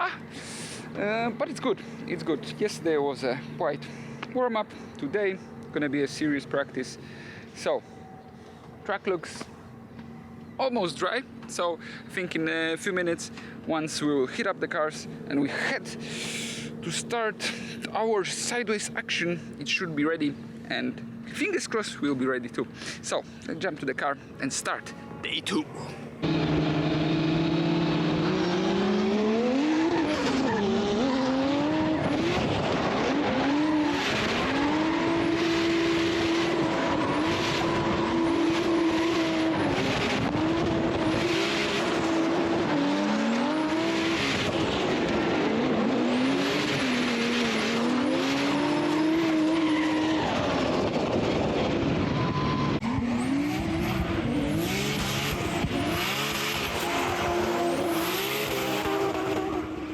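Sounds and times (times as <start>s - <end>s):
car engine revving: 24.9s - 59.9s.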